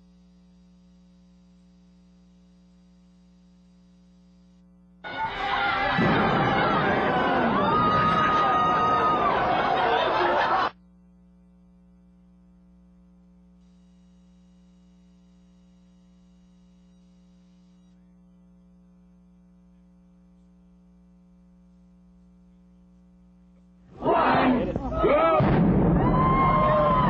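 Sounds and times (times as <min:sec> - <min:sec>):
faint electrical hum: 0:00.0 - 0:27.0
crowd chatter: 0:05.1 - 0:10.7, 0:23.9 - 0:25.3.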